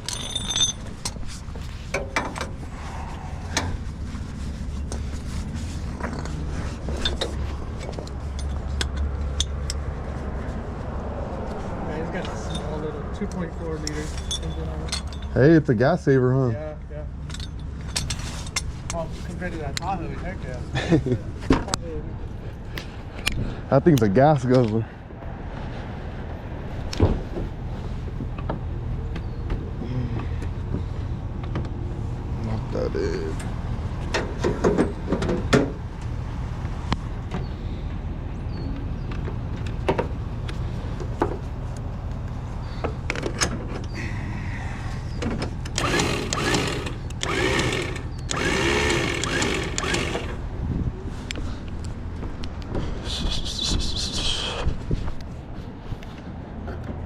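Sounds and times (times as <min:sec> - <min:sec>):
truck engine idling: 0:43.8 - 0:50.5
sharp metallic clicks: 0:45.6 - 0:50.4.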